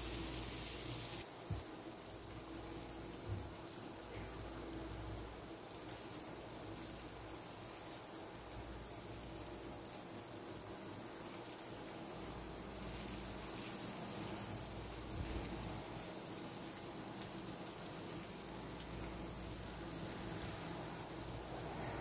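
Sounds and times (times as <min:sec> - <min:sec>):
chicken frying in hot oil: 0:00.0 - 0:22.0.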